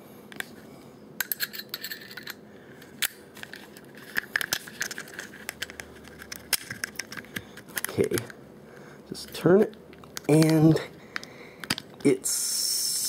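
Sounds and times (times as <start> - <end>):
metal tool clicking on metal parts: 1.2 - 2.4.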